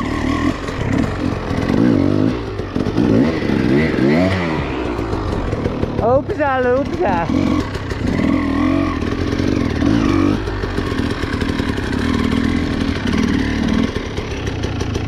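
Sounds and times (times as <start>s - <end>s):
bike rattling: 0.0s - 15.0s
dirt bike engine revving: 0.0s - 15.0s.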